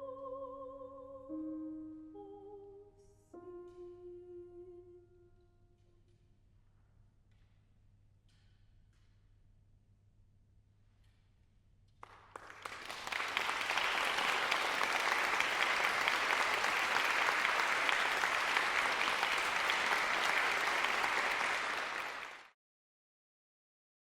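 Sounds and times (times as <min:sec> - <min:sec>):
audience applauding: 0:12.0 - 0:22.6.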